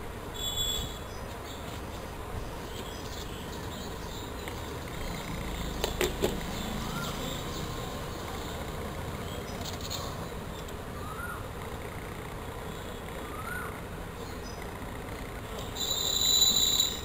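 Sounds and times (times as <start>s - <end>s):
low hum and hiss: 0.0s - 16.5s.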